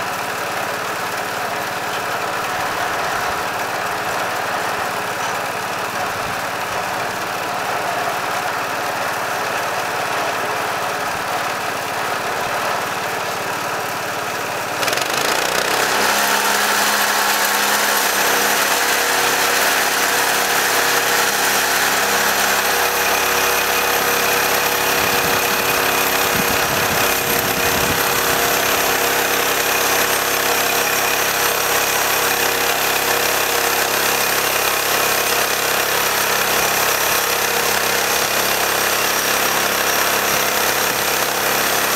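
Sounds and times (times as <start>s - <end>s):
gas engine running: 0.0s - 41.9s
band blade sawing log: 14.8s - 41.9s.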